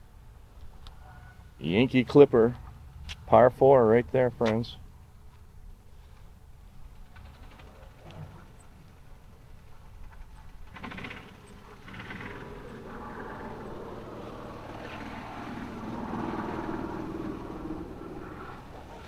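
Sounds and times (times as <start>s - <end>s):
motor vehicle approaching: 6.8s - 19.0s.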